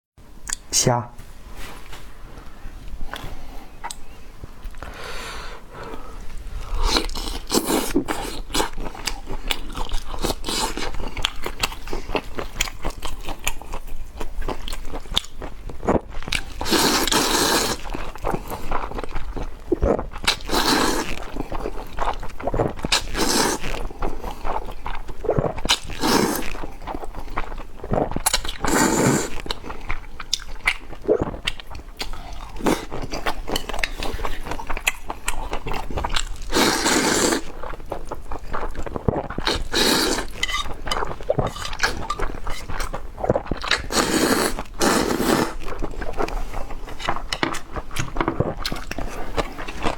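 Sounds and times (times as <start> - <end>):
person chewing food: 5.8 - 49.9.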